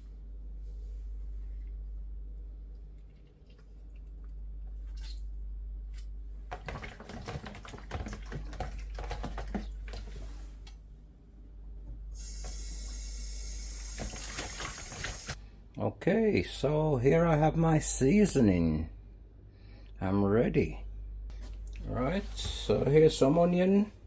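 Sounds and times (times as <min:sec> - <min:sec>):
low hum: 0:00.0 - 0:06.5, 0:15.1 - 0:24.0
water tap running: 0:12.1 - 0:15.4.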